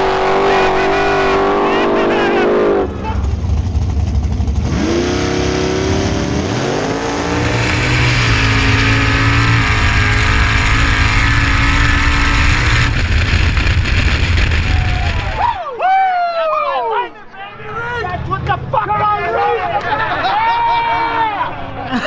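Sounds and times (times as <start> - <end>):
race car engine at full throttle: 0.0 - 15.4
heavy rushing noise: 0.0 - 15.6.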